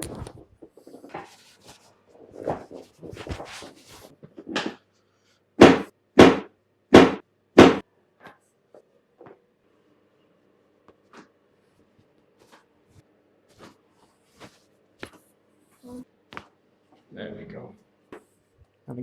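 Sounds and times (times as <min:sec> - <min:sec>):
loud sharp thumps: 0:05.6 - 0:07.8.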